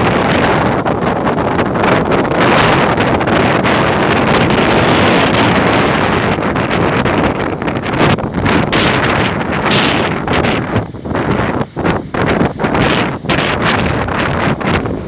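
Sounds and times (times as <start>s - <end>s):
sea rushing: 0.0s - 15.0s
wind buffeting microphone: 0.0s - 15.0s.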